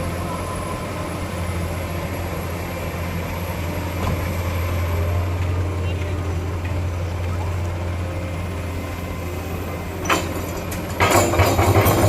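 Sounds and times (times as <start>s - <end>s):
diesel engine idling: 0.0s - 12.0s
loud clattering: 10.0s - 12.0s.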